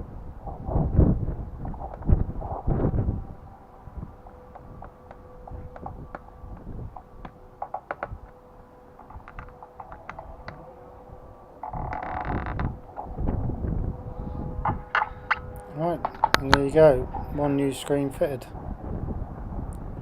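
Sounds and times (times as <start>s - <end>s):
faint steady hum: 0.0s - 20.0s
loud creak: 9.0s - 10.8s, 11.6s - 17.3s.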